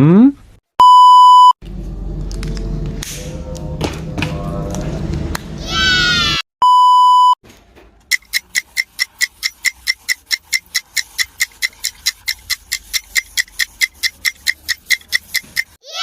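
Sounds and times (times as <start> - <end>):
electronic beep: 0.8 - 1.6
clock ticking: 8.1 - 15.8.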